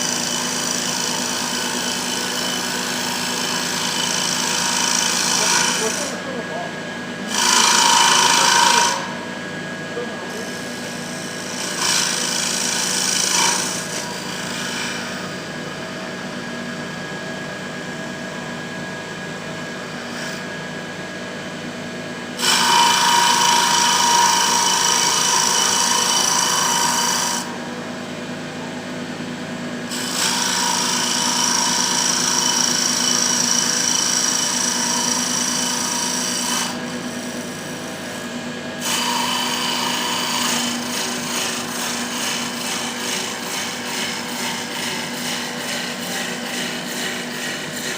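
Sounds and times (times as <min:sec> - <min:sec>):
tool scraping spinning wood: 0:00.0 - 0:09.2
lathe motor hum: 0:00.0 - 0:15.8, 0:22.4 - 0:27.8, 0:29.9 - 0:47.9.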